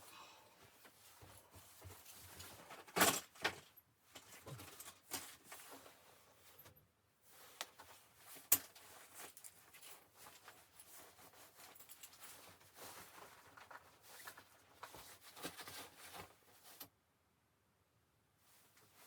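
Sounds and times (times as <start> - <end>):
quiet rustling: 0.6 - 16.9.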